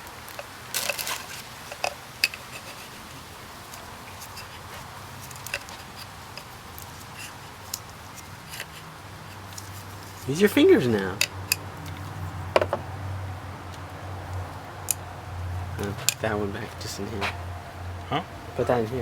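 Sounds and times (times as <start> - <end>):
steady low hiss: 0.0 - 19.0
small parts clicking and tapping: 0.2 - 10.3, 11.0 - 12.8, 13.7 - 15.1.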